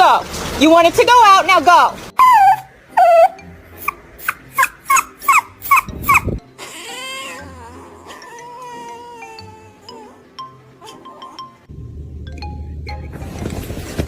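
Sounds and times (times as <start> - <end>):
dog whining: 2.1 - 11.6
dog yipping: 2.2 - 10.2, 10.8 - 11.6.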